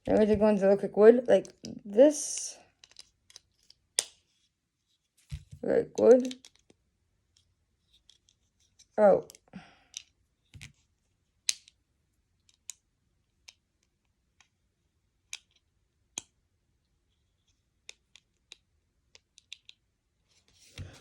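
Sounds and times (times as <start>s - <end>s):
plastic lego pieces clicking: 2.7s - 4.1s, 17.8s - 19.8s.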